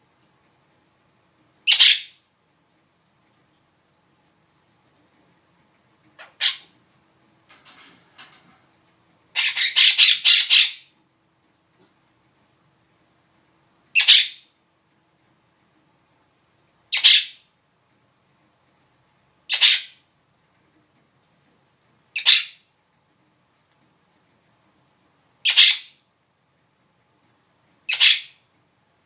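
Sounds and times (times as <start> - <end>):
bird squawking: 1.7 - 2.2, 6.2 - 6.8, 9.4 - 10.9, 16.9 - 17.4, 19.5 - 20.0, 22.2 - 22.6, 25.5 - 25.9, 27.9 - 28.4.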